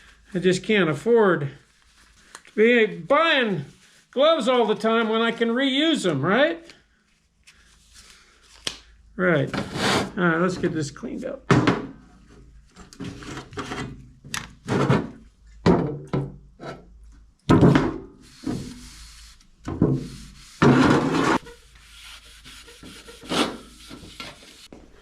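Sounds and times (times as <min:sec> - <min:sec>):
scraping and rubbing strokes on metal: 0:18.2 - 0:24.7.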